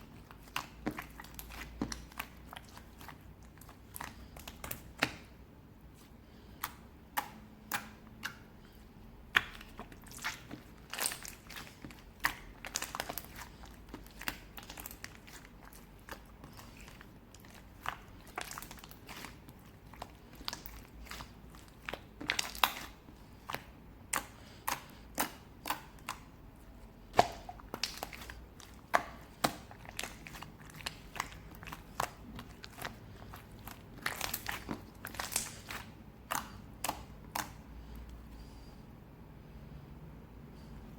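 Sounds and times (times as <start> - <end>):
soft chewing: 0.0 - 38.9
crunching food: 27.0 - 37.6.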